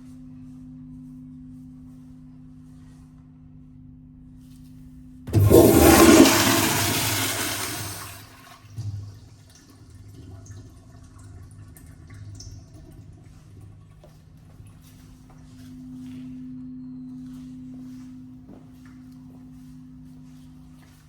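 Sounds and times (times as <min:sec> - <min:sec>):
toilet flushing: 0:05.3 - 0:15.0.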